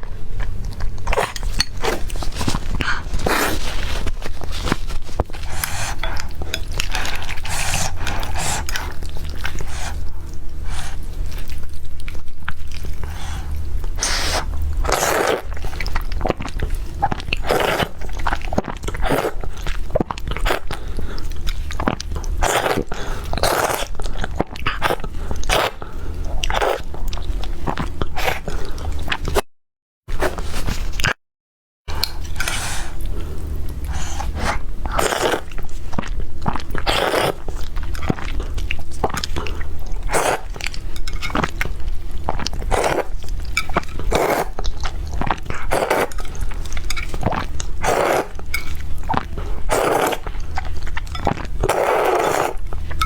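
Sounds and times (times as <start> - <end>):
steady low hum: 0.0 - 29.1.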